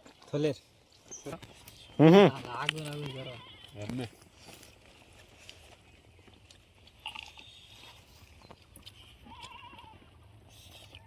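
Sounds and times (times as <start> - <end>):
person chewing: 4.3 - 11.0.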